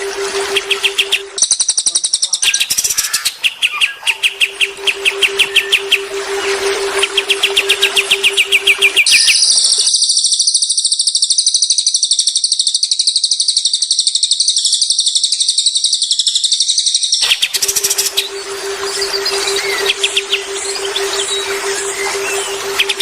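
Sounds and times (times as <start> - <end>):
songbird high fast trill: 0.0 - 1.6, 2.4 - 10.4, 17.2 - 23.0.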